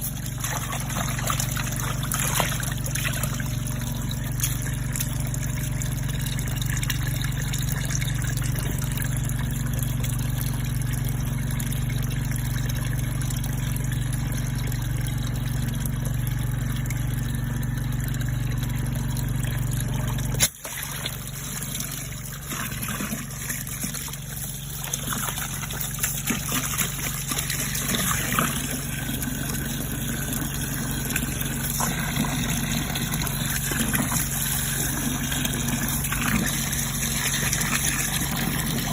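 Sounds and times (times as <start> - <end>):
pump humming: 0.0 - 38.9
water trickling and splashing: 0.0 - 38.9.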